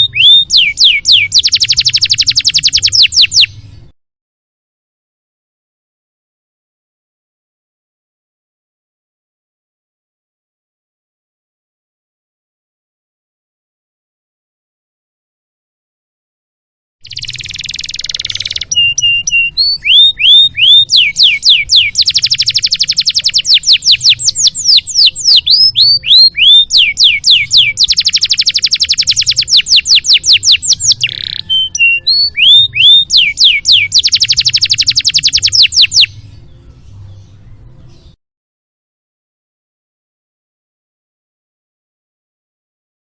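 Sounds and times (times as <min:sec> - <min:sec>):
canary singing: 0:00.0 - 0:03.9, 0:17.0 - 0:38.2.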